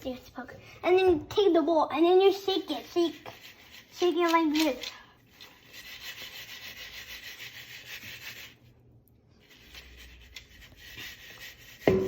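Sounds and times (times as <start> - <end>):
popcorn rustling in a bowl: 2.2 - 8.7.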